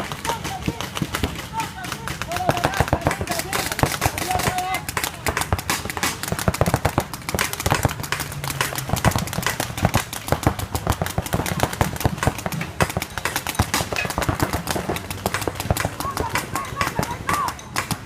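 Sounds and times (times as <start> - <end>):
paintball markers firing: 0.0 - 18.0.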